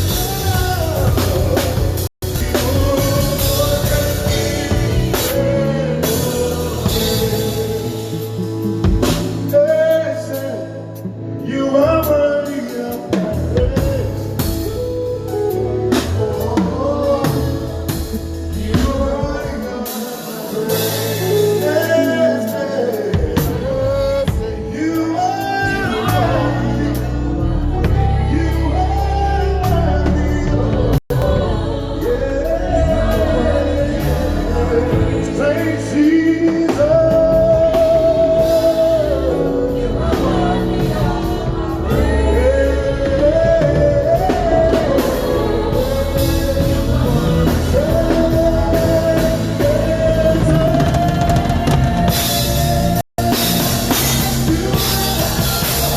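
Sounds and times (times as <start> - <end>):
deep bass notes: 0.0 - 12.4, 22.7 - 55.9
drum kit: 0.0 - 55.9
person singing: 0.0 - 55.9.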